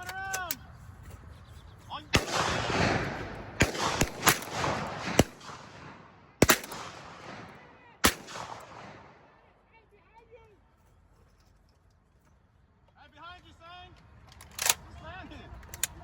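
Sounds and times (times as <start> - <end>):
shotgun shots with rolling echo: 2.1 - 9.5.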